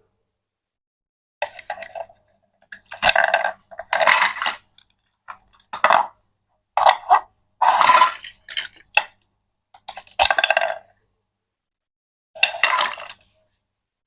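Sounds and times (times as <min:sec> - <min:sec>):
small hard objects clattering: 0:01.4 - 0:06.1, 0:09.8 - 0:10.8, 0:12.4 - 0:13.4.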